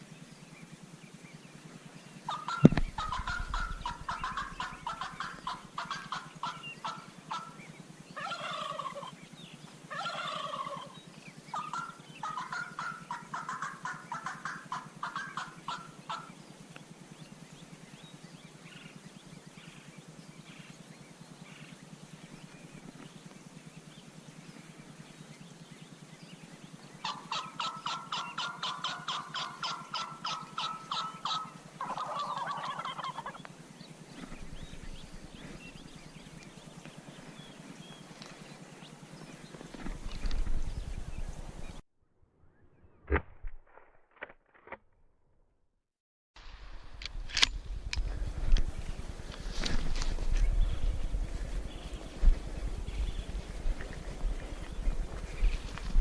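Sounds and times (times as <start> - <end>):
turkeys gobbling: 2.3 - 7.6, 8.2 - 9.1, 9.9 - 10.9, 11.5 - 16.3, 27.0 - 33.5.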